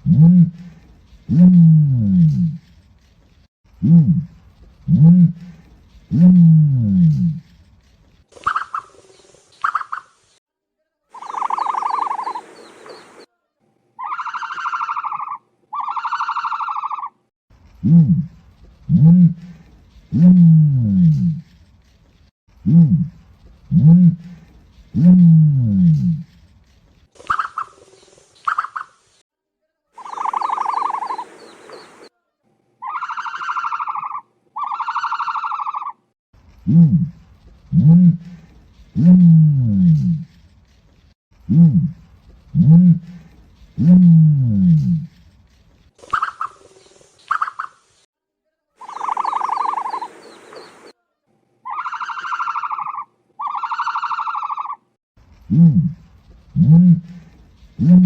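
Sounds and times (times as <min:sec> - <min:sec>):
faint chirps: 0:11.1 - 0:13.4, 0:30.0 - 0:32.2, 0:48.8 - 0:52.6
bird warbling calls: 0:11.2 - 0:13.3, 0:14.0 - 0:17.1, 0:27.2 - 0:29.0, 0:30.0 - 0:32.1, 0:32.8 - 0:36.0, 0:46.0 - 0:47.9, 0:48.8 - 0:50.9, 0:51.7 - 0:54.8
ostrich buzzing calls: 0:11.2 - 0:13.3, 0:30.0 - 0:32.1, 0:48.8 - 0:50.9.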